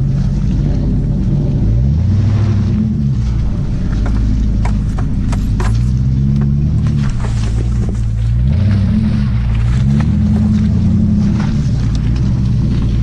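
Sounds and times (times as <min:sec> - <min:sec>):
engine exhaust revving: 0:00.0 - 0:13.0
sharp clicks and knocks: 0:03.8 - 0:08.8.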